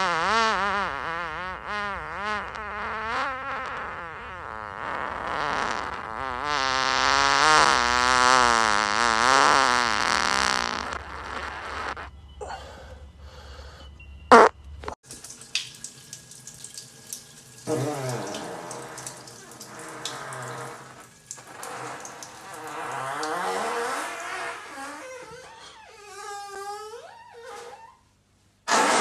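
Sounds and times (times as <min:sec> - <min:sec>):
man farting: 0:00.0 - 0:12.1, 0:14.3 - 0:15.0, 0:17.7 - 0:27.7, 0:28.7 - 0:29.0.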